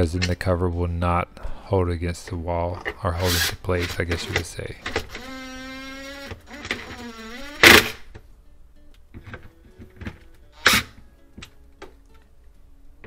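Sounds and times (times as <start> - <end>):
electric driver motor whining: 5.0 - 8.0.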